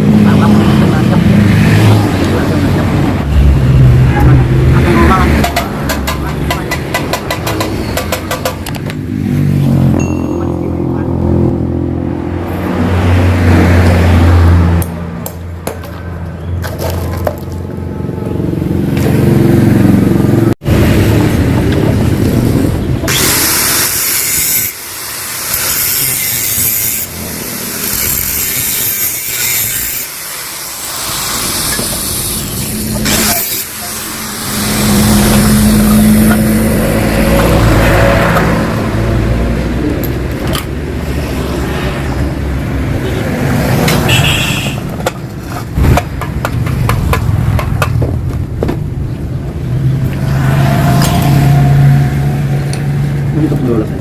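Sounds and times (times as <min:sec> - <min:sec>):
two-stroke motorcycle engine revving: 0:31.0 - 0:40.4.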